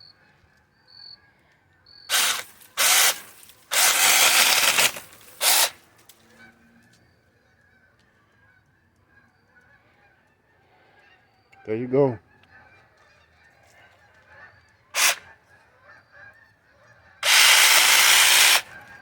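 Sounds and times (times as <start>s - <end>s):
mini chainsaw cutting bursts: 2.1s - 5.8s, 15.0s - 15.2s, 17.2s - 19.0s.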